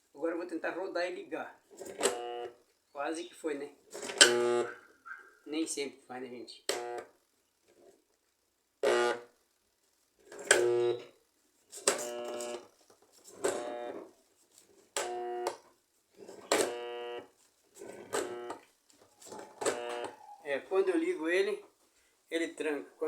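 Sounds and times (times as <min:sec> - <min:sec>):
motor humming while locked: 0:19.6 - 0:20.2.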